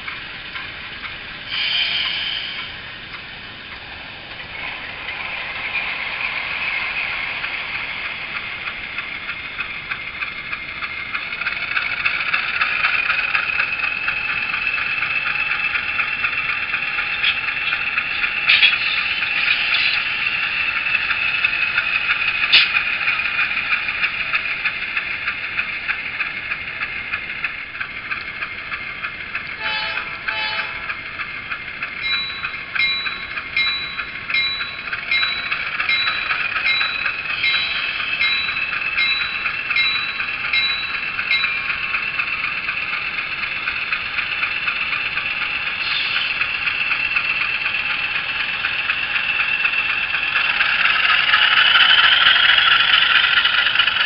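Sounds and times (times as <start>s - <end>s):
model diesel locomotive engine: 0.0s - 54.0s
locomotive bell ringing: 29.6s - 31.0s, 31.8s - 54.0s.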